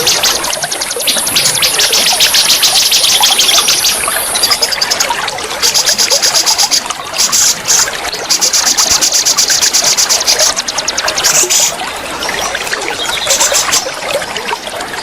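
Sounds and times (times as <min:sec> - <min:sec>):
songbird trilling: 0:01.0 - 0:04.8.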